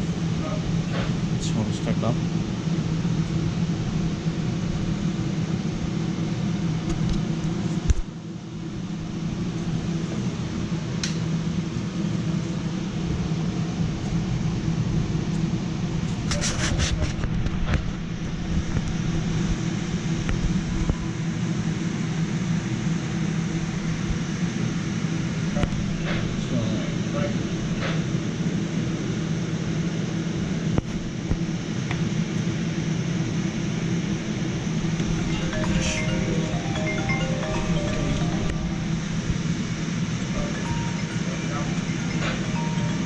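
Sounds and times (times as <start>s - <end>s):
machinery humming: 34.7s - 43.0s.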